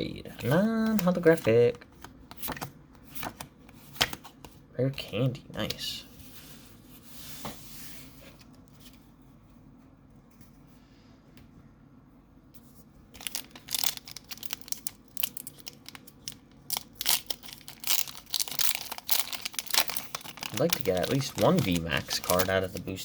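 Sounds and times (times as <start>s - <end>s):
foil wrapper crinkling and tearing: 13.2s - 23.0s.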